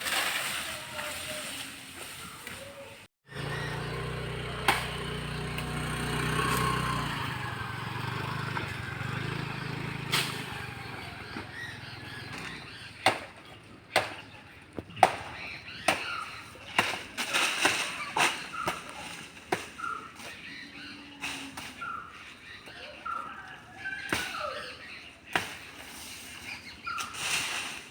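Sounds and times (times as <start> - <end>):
motor hum: 3.3 - 12.6
blade chopping wood: 4.6 - 5.8, 13.0 - 13.4, 14.0 - 20.4.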